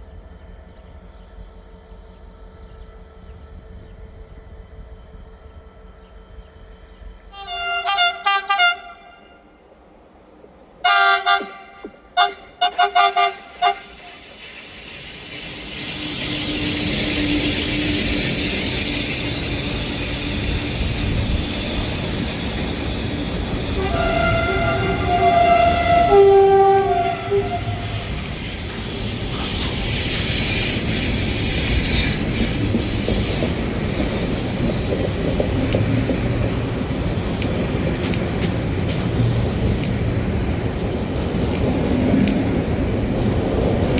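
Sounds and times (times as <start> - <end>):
train running past on rails: 0.0 - 43.9
train horn toots: 7.3 - 9.7, 10.8 - 14.2, 23.6 - 29.8.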